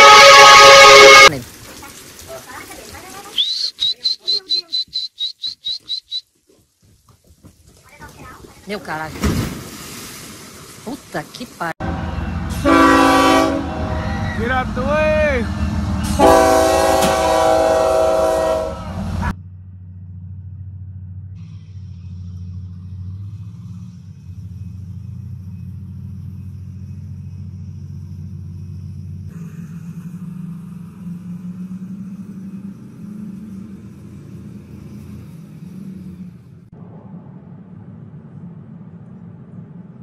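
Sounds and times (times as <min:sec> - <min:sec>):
multi-tone horn chord: 0:00.0 - 0:01.4, 0:11.8 - 0:15.2, 0:16.0 - 0:19.1
low engine hum: 0:06.9 - 0:40.0.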